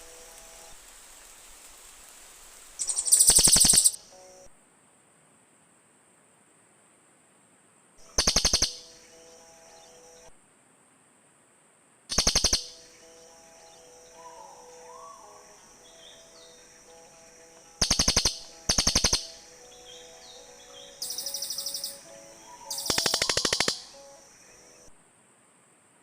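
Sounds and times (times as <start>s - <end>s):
birds chattering trills: 2.8s - 4.0s, 12.1s - 24.9s.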